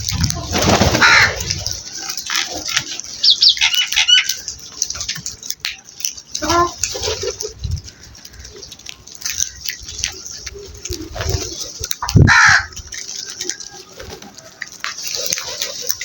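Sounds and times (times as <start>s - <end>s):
birds harsh calls: 0.1s - 16.0s
high bird chirps: 3.1s - 4.6s.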